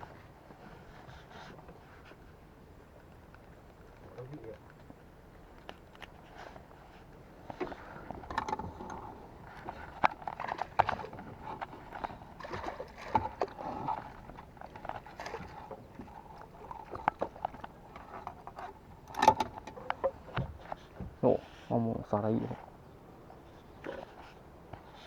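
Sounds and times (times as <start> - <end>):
water sloshing: 6.1 - 25.0
gear knocking on boat: 7.5 - 21.4.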